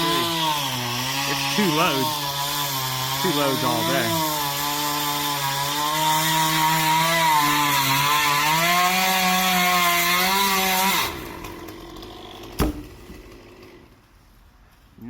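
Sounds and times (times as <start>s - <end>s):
chainsaw cutting wood: 0.0s - 14.2s
sharp knock: 12.6s - 13.2s.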